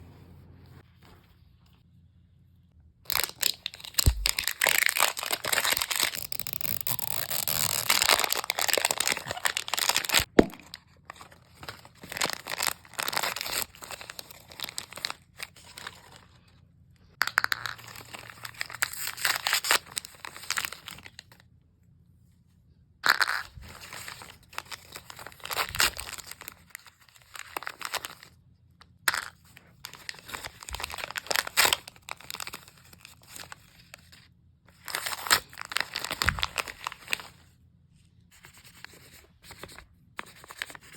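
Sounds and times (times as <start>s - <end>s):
plastic packaging tearing and crinkling: 3.1s - 16.2s, 17.6s - 21.2s, 23.1s - 28.3s, 29.6s - 34.0s, 34.8s - 37.3s.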